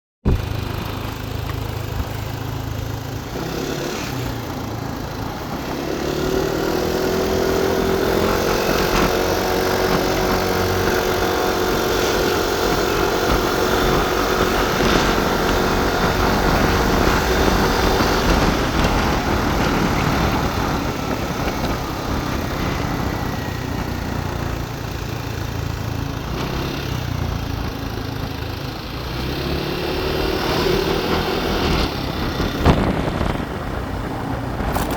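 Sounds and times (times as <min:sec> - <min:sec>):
motorbike engine running: 0:00.2 - 0:34.9
wind on microphone: 0:03.4 - 0:25.5, 0:30.1 - 0:34.9.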